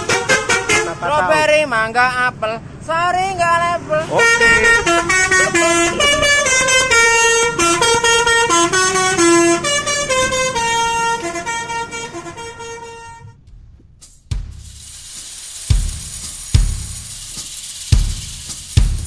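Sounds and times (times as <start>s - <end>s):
multi-tone bus horn tune: 0.0s - 2.3s, 3.1s - 13.4s.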